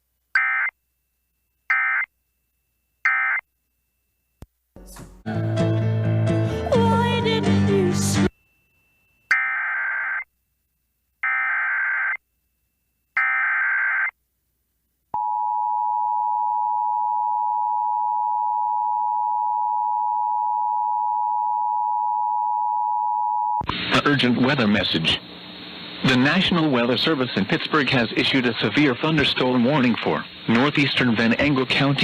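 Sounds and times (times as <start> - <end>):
warbling digital header tones: 9.3 - 10.2.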